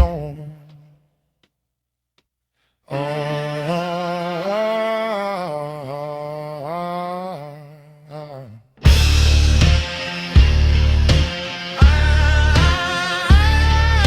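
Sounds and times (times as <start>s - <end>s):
rock band playing: 8.8s - 14.0s
man humming: 11.8s - 14.0s.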